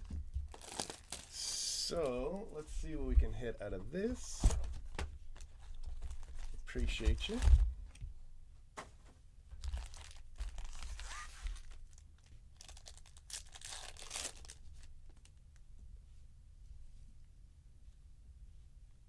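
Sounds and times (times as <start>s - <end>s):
card packaging tearing and crinkling: 0.5s - 2.4s, 5.6s - 7.5s, 9.6s - 12.0s, 12.6s - 15.3s.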